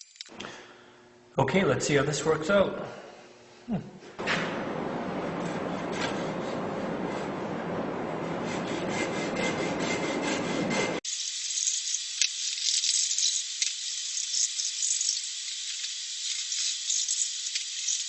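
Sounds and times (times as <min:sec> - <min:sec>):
rasp scraping wood: 0:08.3 - 0:11.0.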